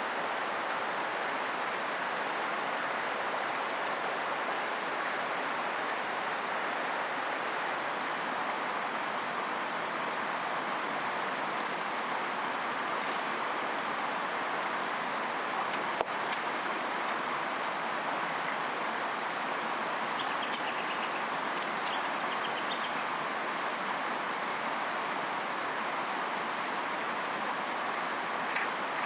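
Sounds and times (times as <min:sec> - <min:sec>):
river flowing: 0:00.0 - 0:29.0
bird chirping: 0:20.0 - 0:23.1.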